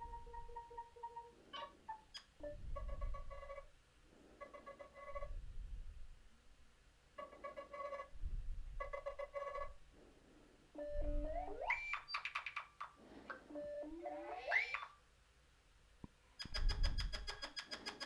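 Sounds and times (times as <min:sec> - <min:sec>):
synthetic ringtone with ticking blips: 0:00.0 - 0:01.3, 0:10.8 - 0:12.0
buzzy electronic tone: 0:10.8 - 0:11.8.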